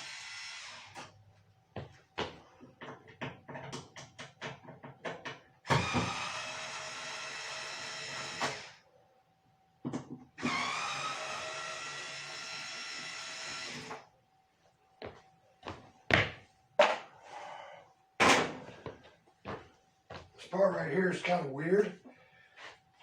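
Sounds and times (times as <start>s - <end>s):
cordless drill motor whine: 0.0s - 1.0s, 5.7s - 8.8s, 10.4s - 14.1s.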